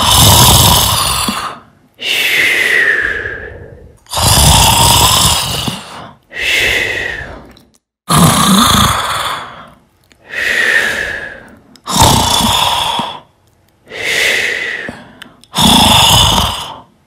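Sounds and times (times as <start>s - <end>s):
person snoring: 0.0s - 7.5s, 8.1s - 13.3s, 13.9s - 16.9s.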